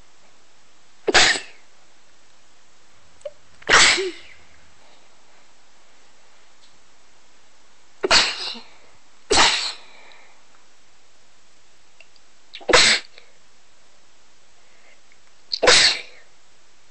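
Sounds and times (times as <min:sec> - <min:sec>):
faint background hiss: 0:00.0 - 0:16.9
person sneezing: 0:01.1 - 0:01.6, 0:03.6 - 0:04.4, 0:08.0 - 0:10.0, 0:12.6 - 0:13.2, 0:15.5 - 0:16.3.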